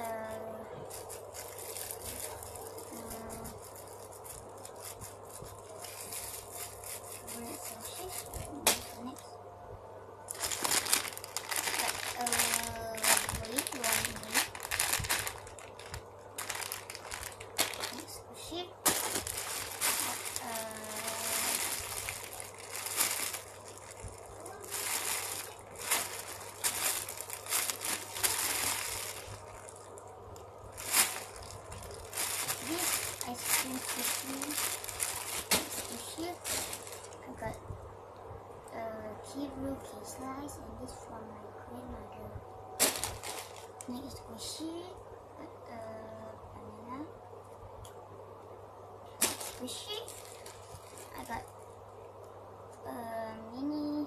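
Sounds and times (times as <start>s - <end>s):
objects rubbing and rustling: 0.7s - 9.3s, 10.3s - 37.5s, 42.8s - 44.0s.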